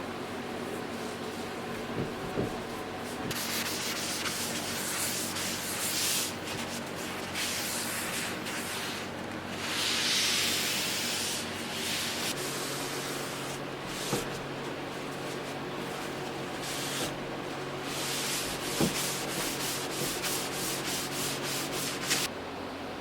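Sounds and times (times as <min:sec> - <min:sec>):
steady low hum: 0:00.0 - 0:23.0
sandpaper sanding wood: 0:03.2 - 0:17.2, 0:17.8 - 0:22.3.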